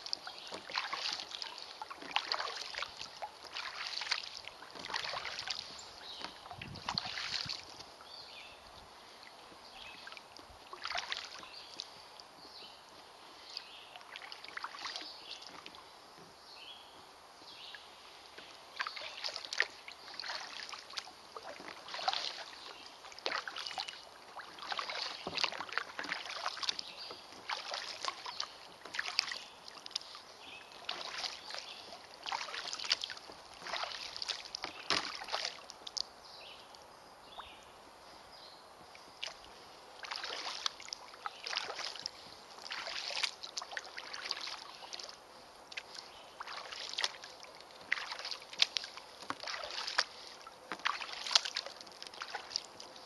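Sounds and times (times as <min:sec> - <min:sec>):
water dripping: 0:00.0 - 0:08.1, 0:50.7 - 0:52.7
paddle splashing through water: 0:00.0 - 0:16.4, 0:17.4 - 0:36.6, 0:38.8 - 0:53.0.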